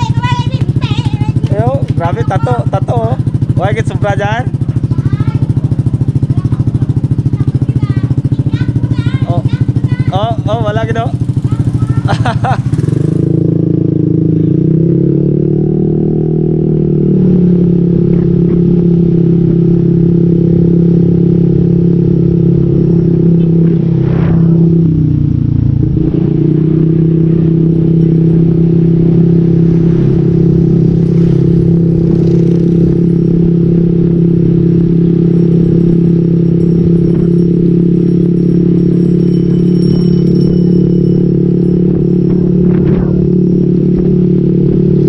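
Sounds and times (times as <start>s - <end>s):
motorcycle engine running: 0.0s - 45.0s.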